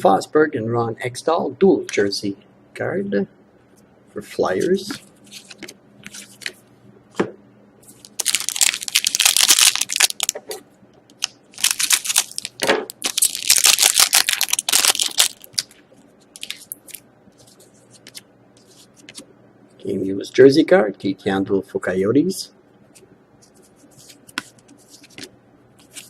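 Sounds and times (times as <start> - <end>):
foil wrapper tearing and crinkling: 8.0 - 10.4, 11.2 - 15.7
cards clicking and rustling: 11.1 - 15.7, 24.0 - 26.0.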